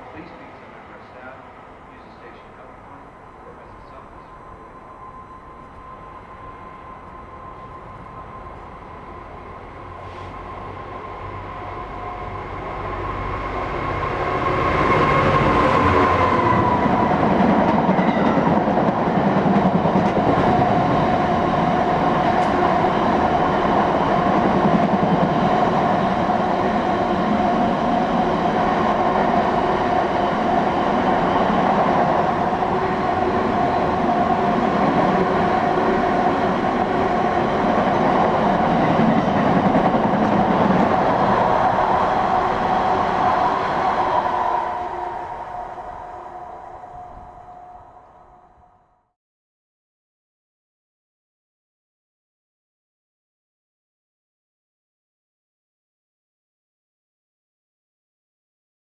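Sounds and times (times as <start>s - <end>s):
train wheel and rail noise: 0.0s - 48.9s
train whine dropping in pitch: 1.0s - 49.1s.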